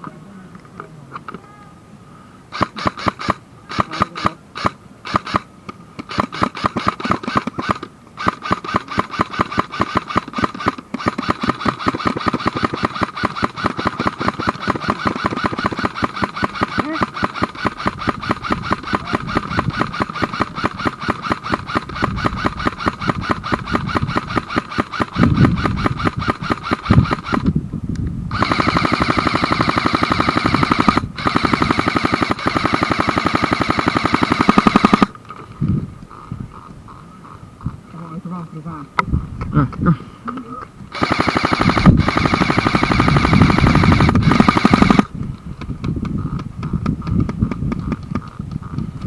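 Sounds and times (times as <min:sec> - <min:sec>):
airsoft gun firing full auto: 0:02.5 - 0:27.5, 0:28.3 - 0:35.2, 0:40.9 - 0:45.1.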